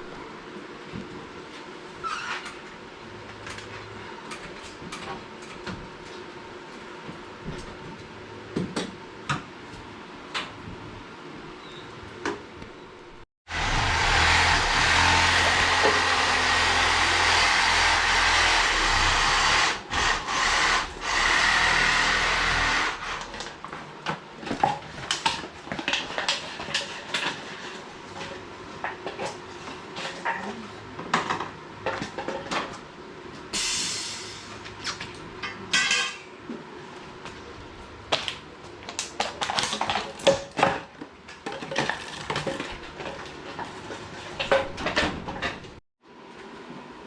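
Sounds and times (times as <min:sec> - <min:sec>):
reciprocating saw cutting: 0:13.5 - 0:23.3.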